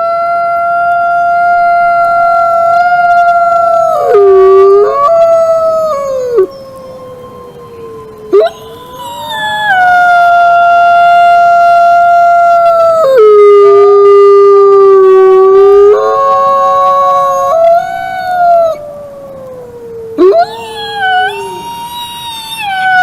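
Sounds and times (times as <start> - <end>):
wolves howling: 1.0 - 23.0.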